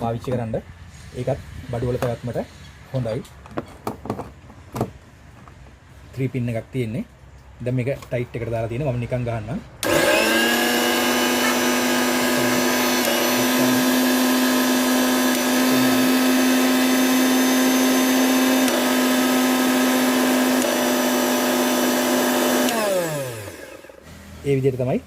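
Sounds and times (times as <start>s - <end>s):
mixer grinder motor whining: 9.8s - 24.8s.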